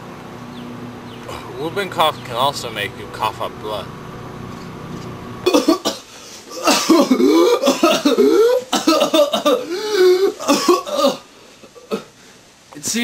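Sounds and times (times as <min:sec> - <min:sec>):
person coughing loudly: 0:05.4 - 0:12.1.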